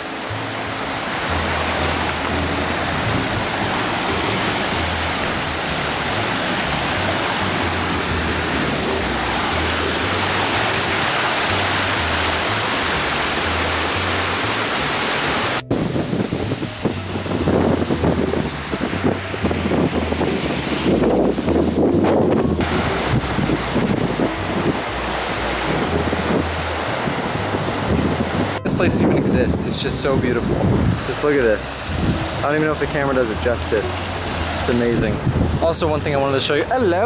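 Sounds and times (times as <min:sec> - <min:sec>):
low bass music: 0:00.0 - 0:37.0
rushing water: 0:00.0 - 0:37.0
wind buffeting microphone: 0:00.0 - 0:37.0.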